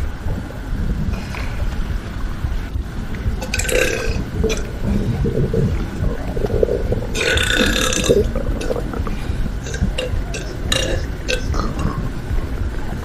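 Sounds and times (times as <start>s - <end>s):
steady low rumble: 0.0s - 13.0s
person burping: 7.1s - 8.8s.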